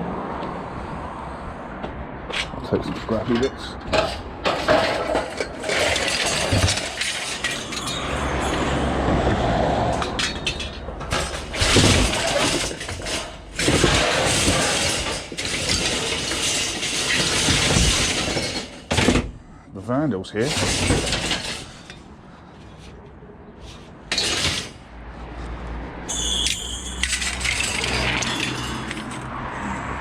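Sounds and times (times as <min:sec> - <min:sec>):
scrap metal clinking: 0:02.3 - 0:19.4, 0:20.4 - 0:23.0, 0:23.6 - 0:24.9, 0:26.1 - 0:29.3.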